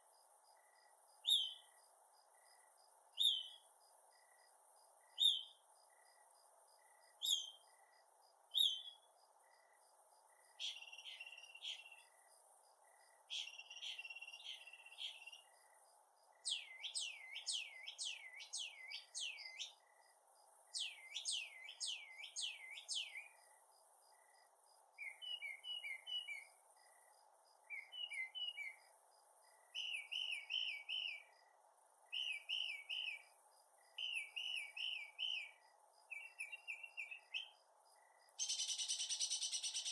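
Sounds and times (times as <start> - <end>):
mockingbird singing varied phrases: 29.8 - 31.3, 34.0 - 37.6, 38.4 - 39.9.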